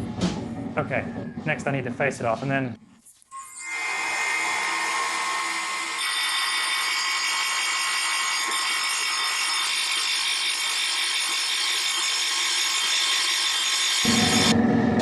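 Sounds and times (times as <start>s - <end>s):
grinding wheel hiss: 3.6s - 14.5s
low rumble: 14.1s - 15.0s.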